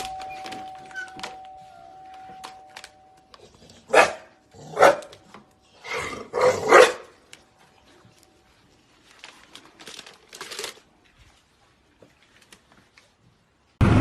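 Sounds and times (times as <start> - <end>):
dog barking: 3.9 - 5.1, 6.4 - 7.1.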